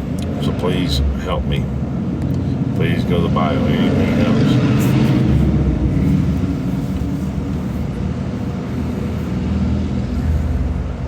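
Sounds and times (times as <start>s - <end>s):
low vehicle rumble: 0.0s - 11.0s.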